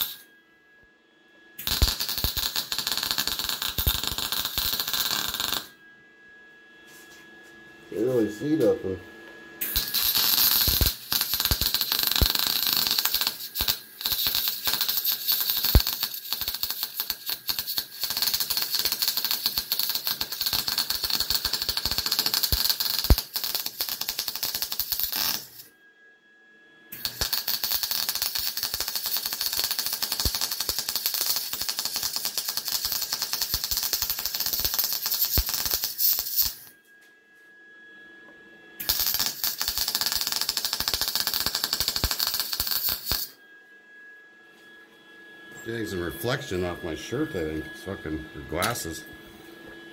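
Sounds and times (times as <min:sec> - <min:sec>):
welder arc crackling: 0:00.0 - 0:00.2, 0:01.6 - 0:05.7, 0:09.6 - 0:25.7, 0:27.0 - 0:36.7, 0:38.8 - 0:43.4.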